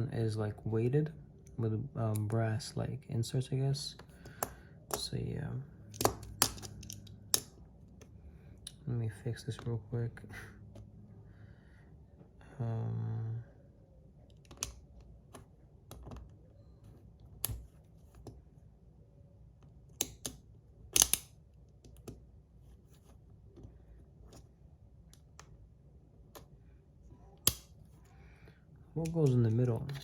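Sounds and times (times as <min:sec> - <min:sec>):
plastic pieces clicking and tapping: 0:05.9 - 0:08.1, 0:20.0 - 0:22.2
plastic snap: 0:21.0 - 0:21.3, 0:27.4 - 0:27.7.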